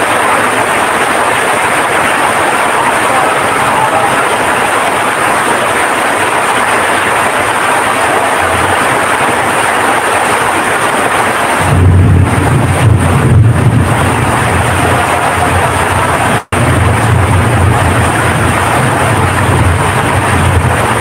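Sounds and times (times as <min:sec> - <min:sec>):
heavy rain pouring: 0:00.0 - 0:21.0
deep uneven rumble: 0:11.6 - 0:21.0.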